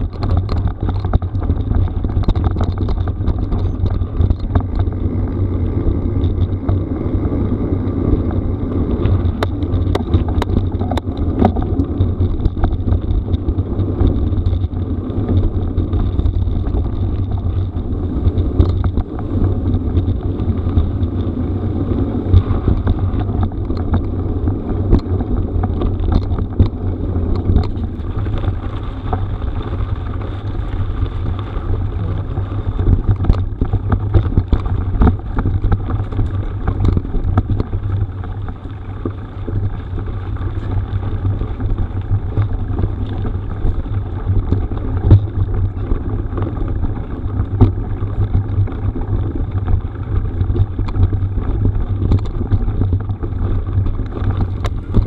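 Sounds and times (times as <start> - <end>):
stones and bike clicking and rattling: 0.0 - 55.0
wind rumble on microphone: 0.0 - 55.0
bike tyres hissing on gravel: 26.8 - 36.7.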